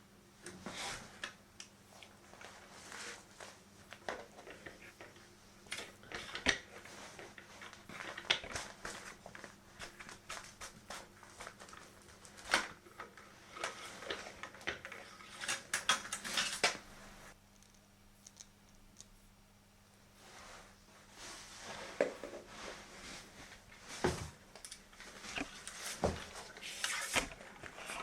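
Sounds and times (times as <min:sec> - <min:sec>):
small parts clicking and scraping: 0:17.5 - 0:19.2.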